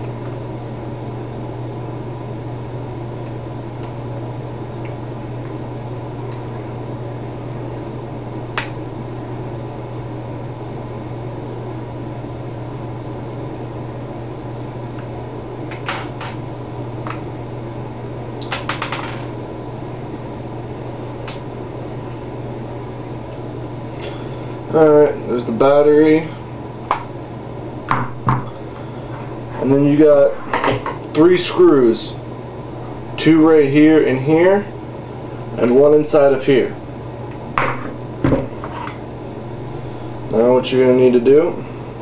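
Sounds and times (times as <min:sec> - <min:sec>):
background hum: 0:00.0 - 0:42.0.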